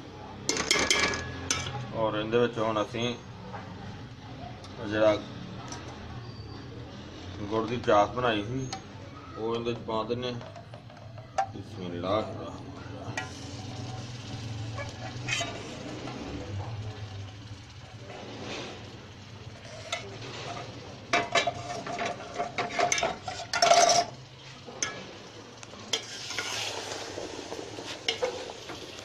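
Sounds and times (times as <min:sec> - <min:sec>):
spoon scraping a pan: 0:13.1 - 0:16.3, 0:18.1 - 0:29.0
sizzling in a hot pan: 0:13.1 - 0:29.0.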